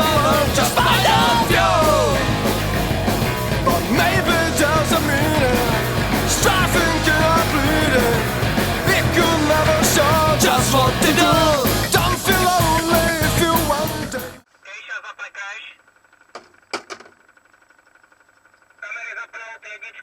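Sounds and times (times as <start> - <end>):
loud rock music with vocals: 0.0 - 14.4.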